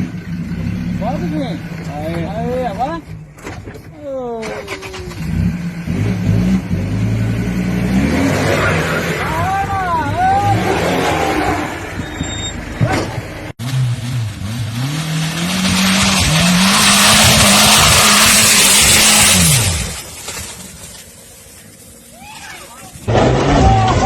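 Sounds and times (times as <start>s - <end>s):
engine revving hard: 4.9s - 9.5s, 10.3s - 12.0s, 13.6s - 20.1s
spinning tyres hissing: 13.9s - 23.1s.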